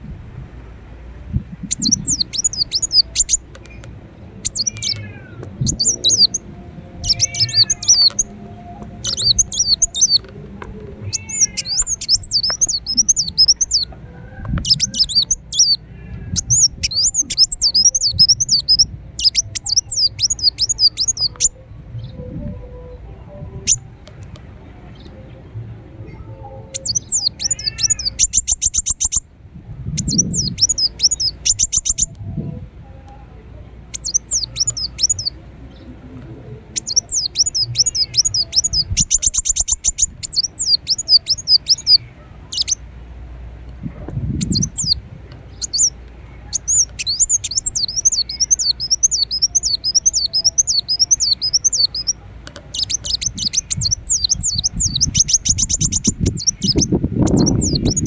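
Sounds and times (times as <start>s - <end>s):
bird singing high trills: 1.6s - 3.8s, 4.4s - 10.3s, 11.1s - 13.9s, 14.6s - 23.9s, 26.1s - 29.2s, 30.0s - 32.1s, 34.0s - 35.4s, 36.8s - 42.8s, 44.4s - 58.0s.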